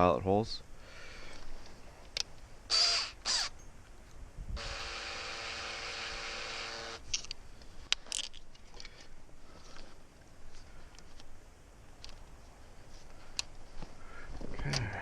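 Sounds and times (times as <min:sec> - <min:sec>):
drill motor spinning: 0:02.7 - 0:03.5, 0:04.6 - 0:07.0.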